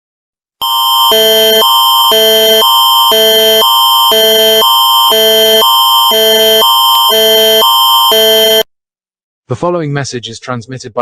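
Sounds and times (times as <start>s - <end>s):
electronic alarm alternating chords: 0.6s - 8.7s.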